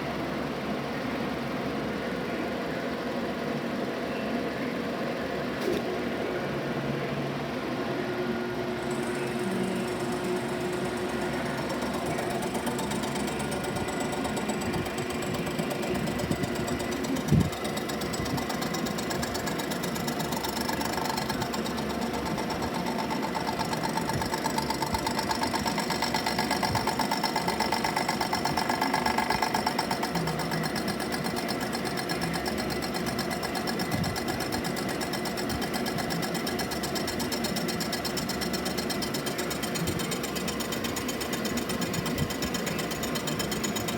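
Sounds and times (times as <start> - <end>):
milling machine hum: 5.2 - 43.9
milling cutter chatter: 8.8 - 43.9.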